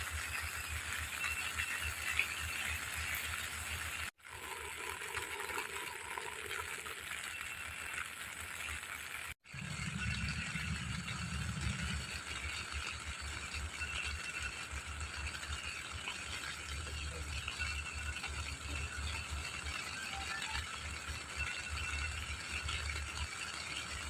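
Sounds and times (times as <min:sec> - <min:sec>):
rain pattering on a tent: 0:05.5 - 0:24.0.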